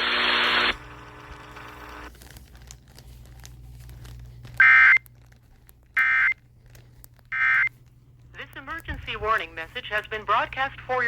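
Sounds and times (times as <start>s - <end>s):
broadcast static hiss: 0.0s - 2.2s, 7.3s - 11.0s
low hiss and hum: 0.0s - 11.0s.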